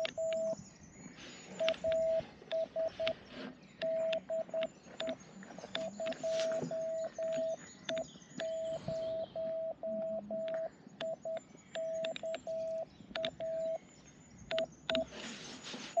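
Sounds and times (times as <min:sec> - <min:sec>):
morse code tone: 0:00.0 - 0:00.6, 0:01.5 - 0:03.2, 0:03.8 - 0:13.8, 0:14.5 - 0:15.2
sharp clicks: 0:00.0 - 0:00.6, 0:01.6 - 0:03.2, 0:03.8 - 0:08.7, 0:10.0 - 0:13.8, 0:14.5 - 0:15.1.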